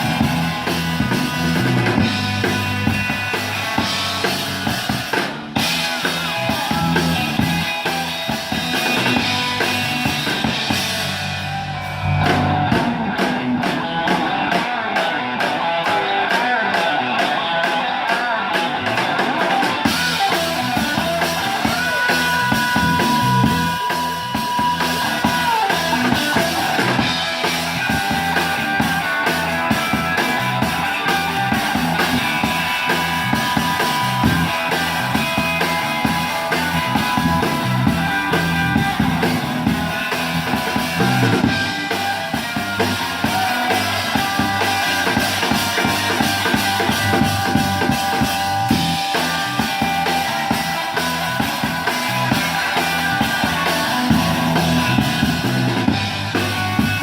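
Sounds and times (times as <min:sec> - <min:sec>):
rock band playing: 0:00.0 - 0:57.0
bass drum and snare beat: 0:19.6 - 0:57.0.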